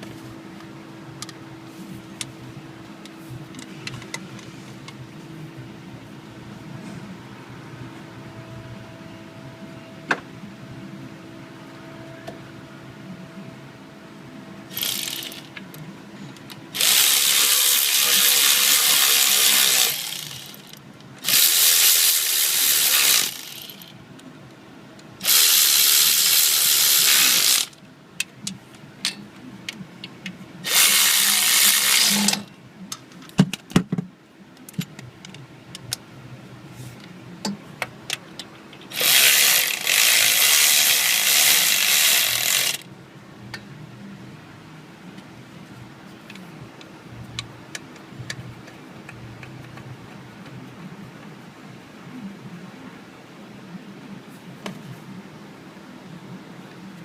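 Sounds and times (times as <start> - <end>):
power tool driving bolts: 14.7 - 15.5, 16.8 - 23.9, 25.2 - 27.8, 30.6 - 32.5, 38.9 - 42.8.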